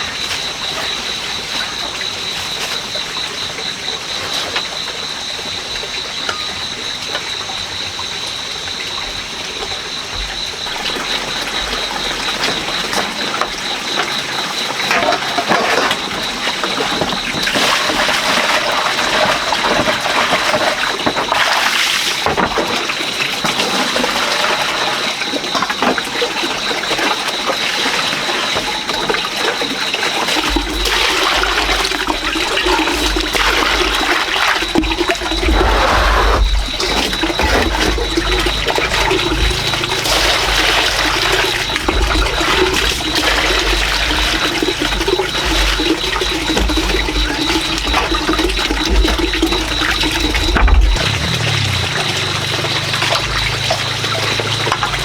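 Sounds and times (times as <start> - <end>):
water running and splashing: 0.0 - 55.0
low rumble: 35.2 - 45.0, 49.6 - 55.0.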